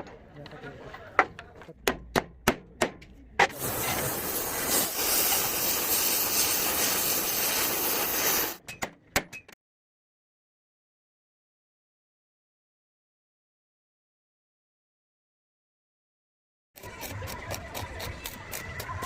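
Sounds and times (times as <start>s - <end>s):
compressed air hissing: 3.6s - 8.6s.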